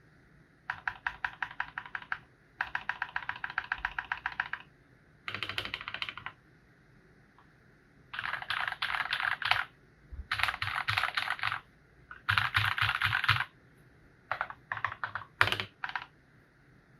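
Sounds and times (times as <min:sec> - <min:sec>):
mechanical keyboard typing: 0:00.7 - 0:04.7, 0:05.3 - 0:06.4, 0:08.2 - 0:09.7, 0:10.3 - 0:13.5, 0:14.3 - 0:16.2.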